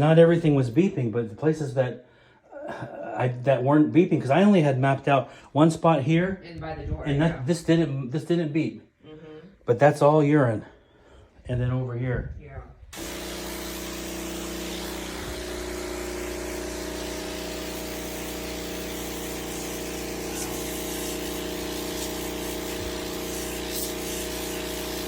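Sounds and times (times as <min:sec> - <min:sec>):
carpet cleaning machine running: 0:13.0 - 0:25.0.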